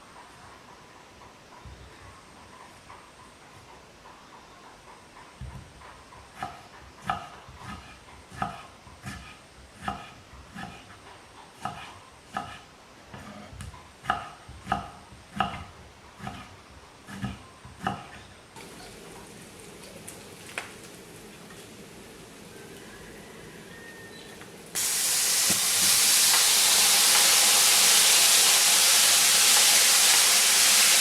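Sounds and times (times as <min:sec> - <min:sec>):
steady hiss: 0:18.6 - 0:23.7, 0:24.5 - 0:31.0.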